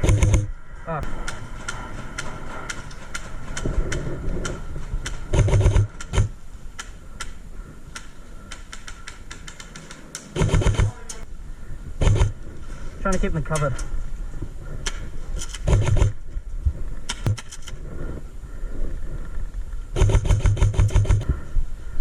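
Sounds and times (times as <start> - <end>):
airsoft gun rapid fire bursts: 5.3 - 6.3, 10.4 - 11.0, 15.6 - 16.2, 20.0 - 21.2.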